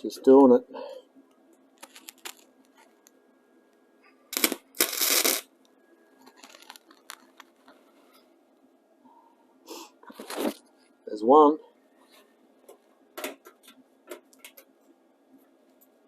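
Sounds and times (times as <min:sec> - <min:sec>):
welding arc crackling: 0:04.3 - 0:05.5, 0:06.2 - 0:07.5.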